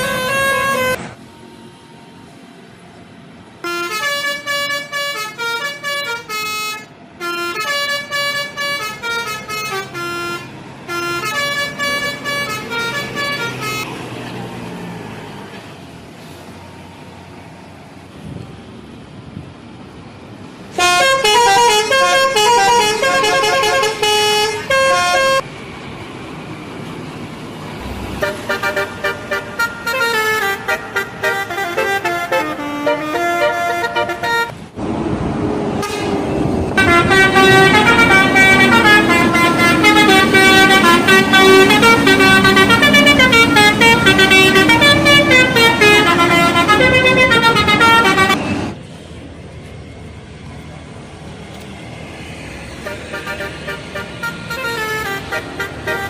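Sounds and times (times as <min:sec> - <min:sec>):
multi-tone bus air horns melody: 0:00.0 - 0:01.1, 0:03.6 - 0:13.9, 0:20.7 - 0:25.5, 0:28.2 - 0:34.6, 0:35.8 - 0:36.2, 0:36.8 - 0:48.8, 0:52.8 - 0:56.0.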